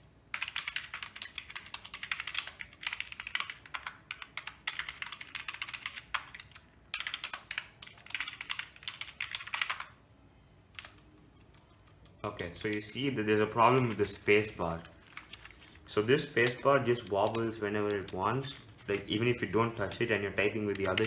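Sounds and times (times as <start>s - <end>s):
rapid keyboard typing: 0.3s - 10.0s, 10.7s - 21.0s.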